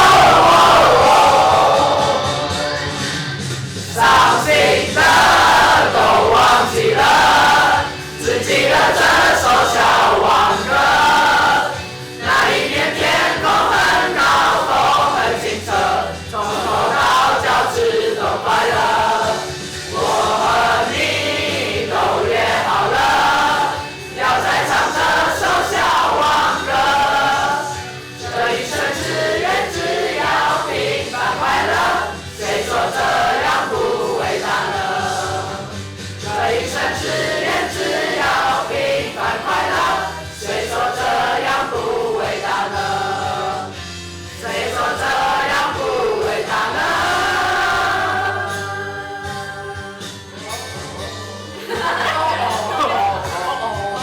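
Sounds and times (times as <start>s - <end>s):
backing track with steady bass: 0.0s - 54.0s
many voices singing together: 0.0s - 54.0s.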